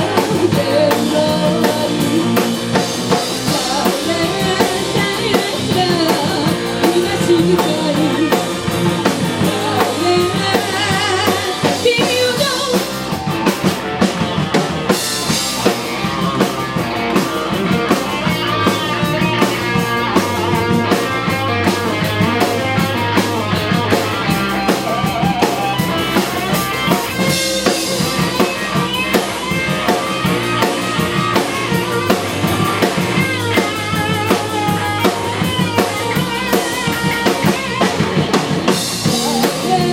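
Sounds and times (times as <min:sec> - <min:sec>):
person singing: 0:00.0 - 0:14.7, 0:39.0 - 0:39.9
drum kit beat: 0:00.0 - 0:39.9
guitar: 0:00.0 - 0:39.9.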